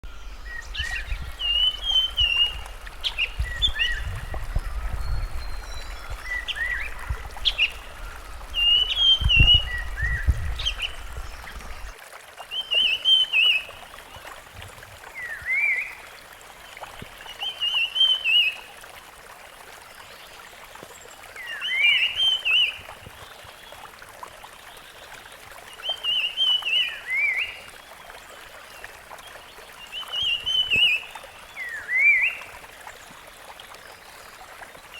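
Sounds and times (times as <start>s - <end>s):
bird singing warbling phrases: 0.1s - 11.9s.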